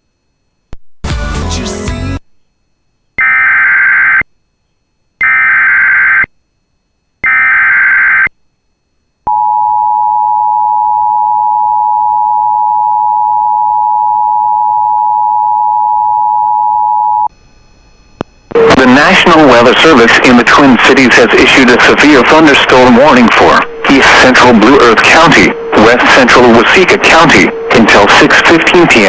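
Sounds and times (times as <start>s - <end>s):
shrill digital data tones: 18.6s - 29.0s.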